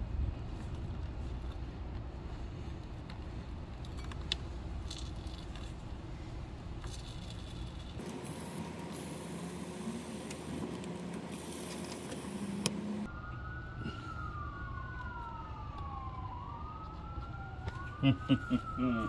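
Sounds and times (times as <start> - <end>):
emergency vehicle siren wailing: 12.7 - 19.0.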